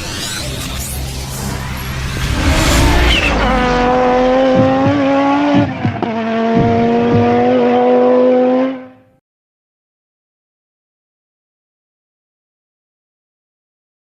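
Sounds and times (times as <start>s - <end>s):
rally car engine at high revs: 0.0s - 9.1s.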